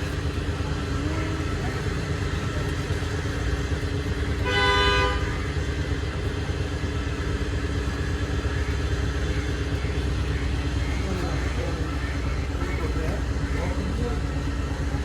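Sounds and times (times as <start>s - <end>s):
low motor drone: 0.0s - 15.0s
vehicle horn: 4.4s - 5.6s.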